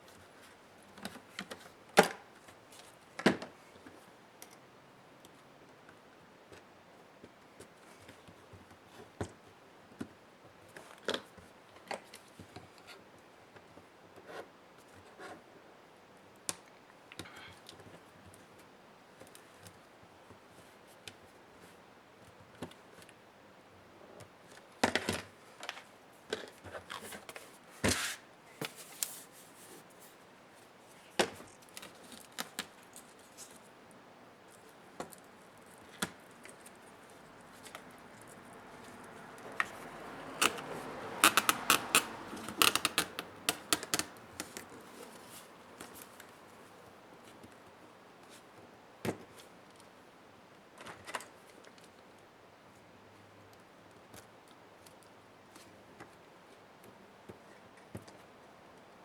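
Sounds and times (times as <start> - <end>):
laptop parts clicking and scraping: 34.5 - 46.4.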